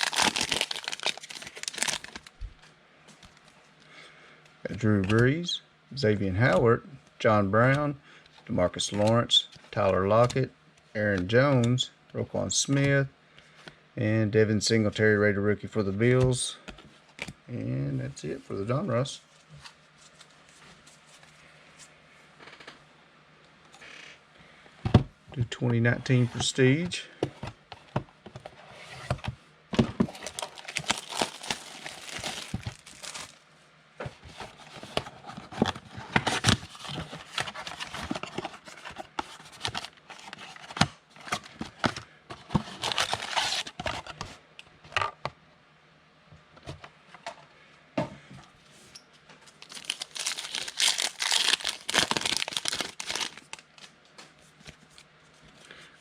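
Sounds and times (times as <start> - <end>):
plastic wrapper tearing and crinkling: 0.0 - 2.4, 30.1 - 33.4, 42.7 - 43.8, 49.6 - 53.9.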